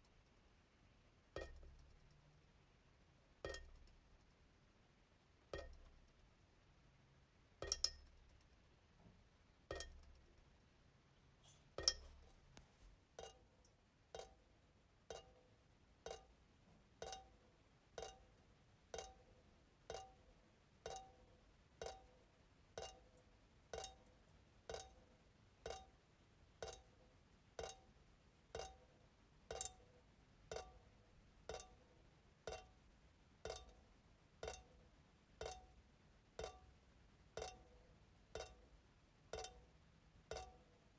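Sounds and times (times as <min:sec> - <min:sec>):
faucet dripping into sink: 0:01.3 - 0:01.8, 0:03.4 - 0:03.9, 0:05.5 - 0:06.0, 0:07.6 - 0:08.1, 0:09.7 - 0:10.2, 0:11.8 - 0:12.2, 0:13.2 - 0:13.5, 0:14.1 - 0:14.4, 0:15.1 - 0:15.4, 0:16.0 - 0:16.3, 0:17.0 - 0:17.4, 0:18.0 - 0:18.3, 0:18.9 - 0:19.2, 0:19.9 - 0:20.2, 0:20.8 - 0:21.2, 0:22.8 - 0:24.1, 0:24.7 - 0:25.0, 0:25.6 - 0:26.0, 0:26.6 - 0:26.9, 0:27.6 - 0:27.9, 0:28.5 - 0:28.8, 0:29.5 - 0:29.9, 0:30.5 - 0:30.8, 0:31.5 - 0:31.8, 0:32.4 - 0:32.7, 0:33.4 - 0:33.8, 0:34.4 - 0:34.8, 0:35.4 - 0:35.7, 0:36.4 - 0:36.7, 0:37.4 - 0:37.8, 0:38.4 - 0:38.6, 0:39.3 - 0:39.6, 0:40.3 - 0:40.6.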